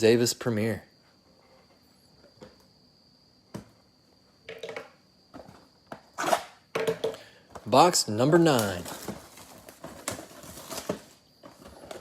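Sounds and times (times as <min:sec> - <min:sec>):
cards and packaging rustling: 0:07.5 - 0:12.0.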